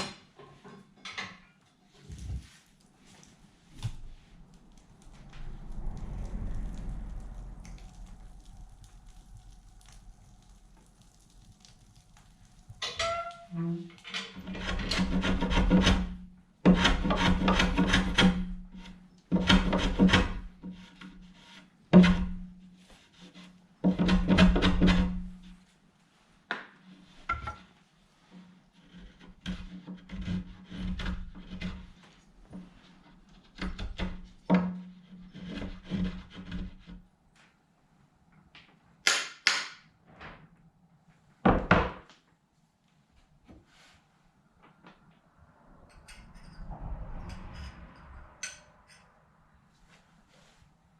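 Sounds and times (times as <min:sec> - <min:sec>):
hand tool rasping wood: 0:14.4 - 0:22.4.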